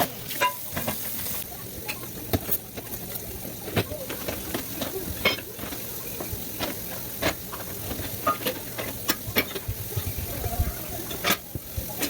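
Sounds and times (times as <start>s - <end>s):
food sizzling in a pan: 0.0s - 12.0s
utensil scraping a pan: 3.7s - 12.0s.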